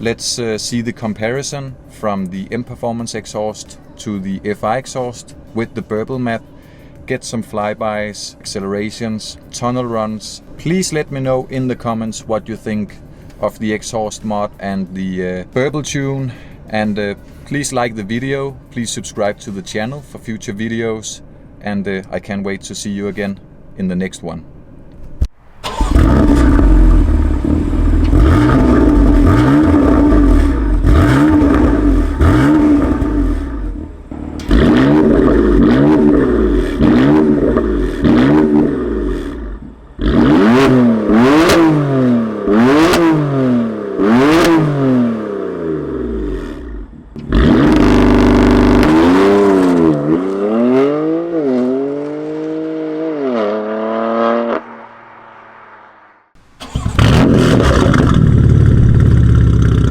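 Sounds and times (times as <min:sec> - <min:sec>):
exhaust cracks: 0:24.9 - 0:59.9
car engine revving: 0:25.4 - 0:59.9.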